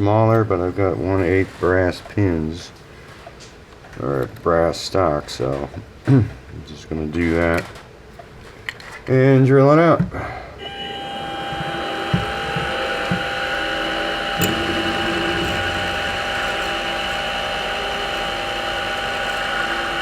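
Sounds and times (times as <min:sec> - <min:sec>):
milling machine spindle whine: 0:10.7 - 0:20.0.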